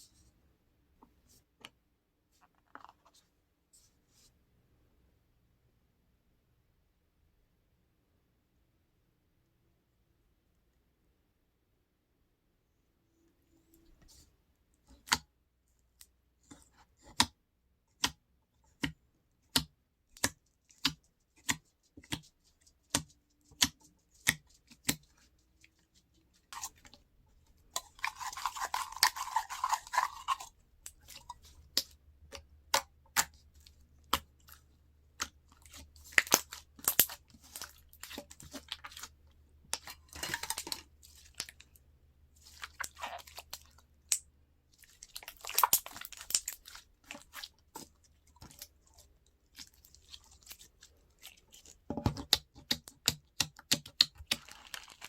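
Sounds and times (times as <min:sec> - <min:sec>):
slime squishing and crackling: 0:27.6 - 0:41.8, 0:42.4 - 0:55.0.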